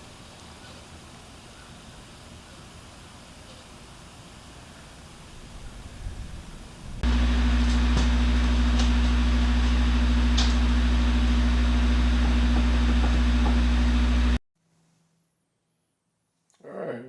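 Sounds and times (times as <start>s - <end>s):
machine hum with electrical buzz: 6.8s - 14.4s.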